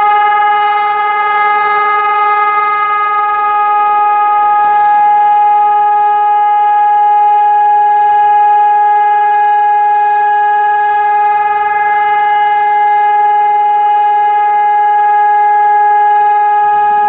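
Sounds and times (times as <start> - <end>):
siren steady tone: 0.0 - 17.0.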